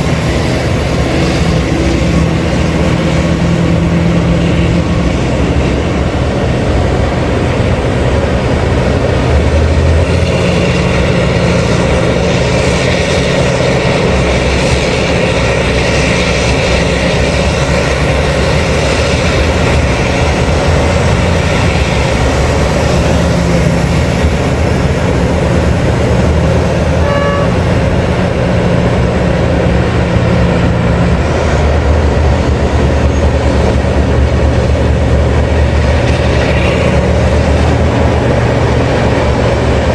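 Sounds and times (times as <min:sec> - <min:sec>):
heavy diesel machinery running: 0:00.0 - 0:39.9
brief high tone: 0:27.0 - 0:27.6.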